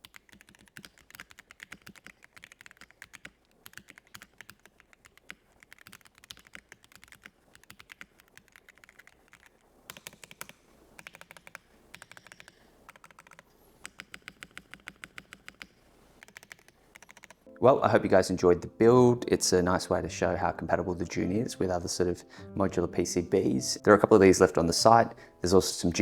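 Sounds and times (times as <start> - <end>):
mechanical keyboard typing: 0.0 - 17.5.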